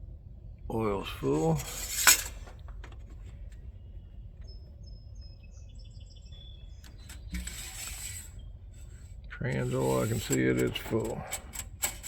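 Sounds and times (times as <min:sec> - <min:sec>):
faint birds chirping: 0:00.0 - 0:12.0
low background rumble: 0:00.0 - 0:12.0
scraping rub: 0:01.2 - 0:02.6, 0:06.9 - 0:12.0.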